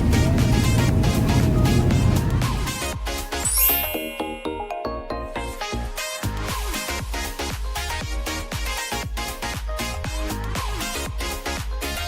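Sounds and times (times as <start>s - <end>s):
electronic music with bass beat: 4.5s - 12.0s.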